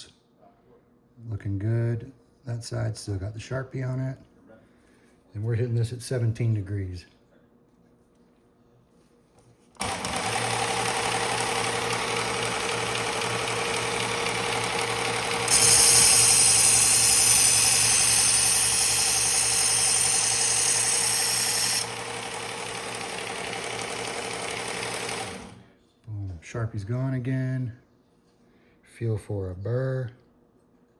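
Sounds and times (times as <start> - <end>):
knife sharpener motor hum: 9.8 - 25.6.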